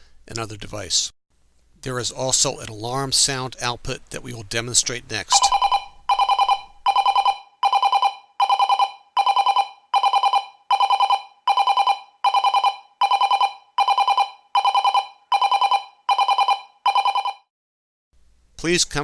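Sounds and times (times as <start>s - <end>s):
fast-warbling electronic alarm tone: 5.3s - 17.5s.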